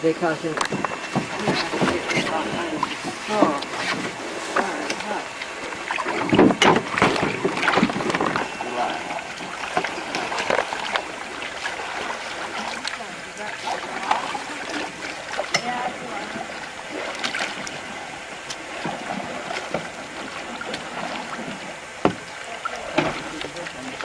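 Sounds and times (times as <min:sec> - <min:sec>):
paddle splashing water: 0:00.0 - 0:24.0
sharp knocks and clicks: 0:22.0 - 0:22.3.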